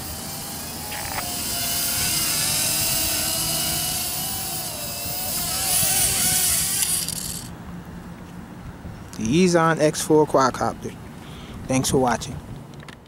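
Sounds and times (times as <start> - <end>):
quadcopter motors whining: 0.0 - 7.5.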